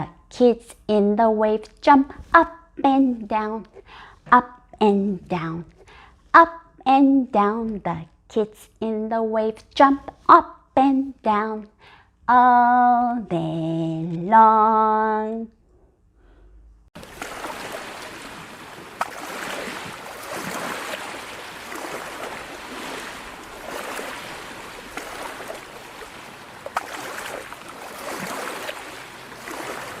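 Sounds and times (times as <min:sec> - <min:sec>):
water washing and lapping: 0:17.0 - 0:30.0.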